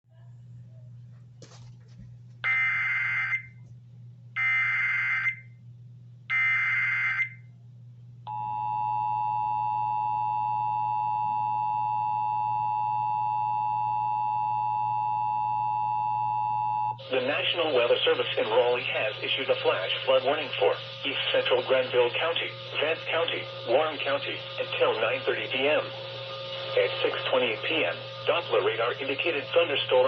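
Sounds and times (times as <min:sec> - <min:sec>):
steady two-tone attention signal: 0:08.3 - 0:30.0
digital data tone bursts: 0:17.0 - 0:30.0.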